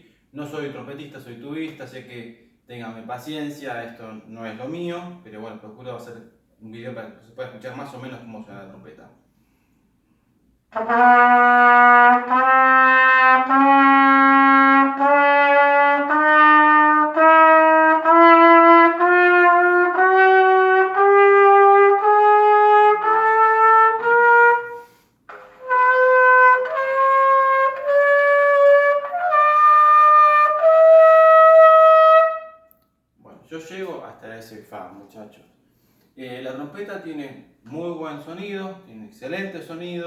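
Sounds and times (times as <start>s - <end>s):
trumpet playing ascending scale: 10.7s - 32.7s.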